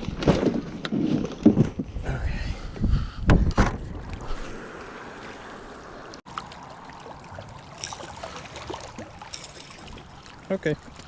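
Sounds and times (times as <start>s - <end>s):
wind: 0.0s - 11.0s
water at the shore: 2.7s - 11.0s.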